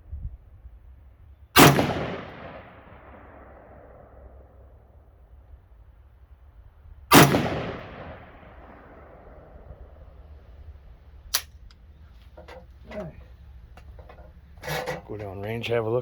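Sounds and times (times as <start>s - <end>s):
rifle shot with echo: 1.6s - 4.6s, 7.1s - 10.2s
faint sharp crack: 11.3s - 11.8s.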